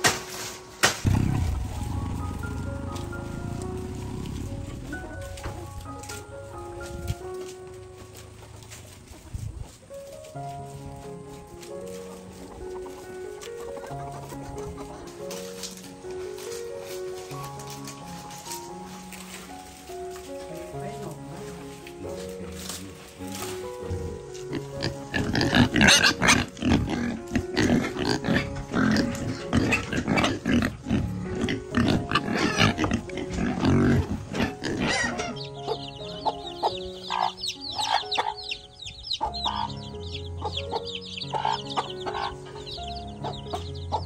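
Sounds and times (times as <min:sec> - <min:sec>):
background music: 0:00.0 - 0:44.0
pigs squealing and grunting: 0:24.5 - 0:35.8.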